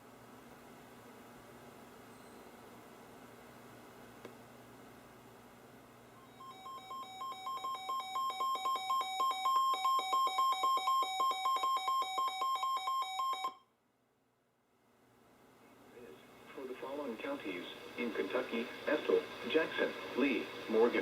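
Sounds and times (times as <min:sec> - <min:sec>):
faint radio hiss: 0:00.0 - 0:07.4, 0:14.2 - 0:21.0
two-pitch pulsing alarm beeps: 0:06.2 - 0:13.6.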